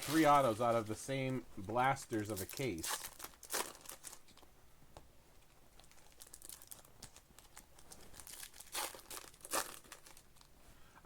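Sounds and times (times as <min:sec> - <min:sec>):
foil wrappers crinkling and tearing: 0:00.0 - 0:00.8, 0:02.1 - 0:04.2, 0:05.8 - 0:10.5.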